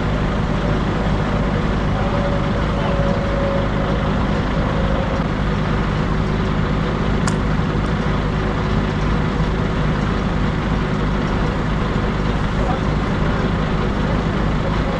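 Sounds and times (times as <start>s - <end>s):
engine running steadily: 0.0s - 14.9s
short sharp click: 7.2s - 7.4s.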